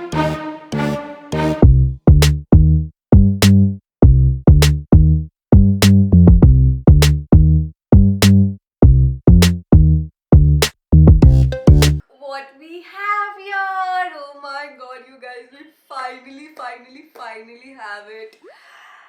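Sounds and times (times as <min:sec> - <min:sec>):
electronic music with drum machine: 0:11.2 - 0:12.0.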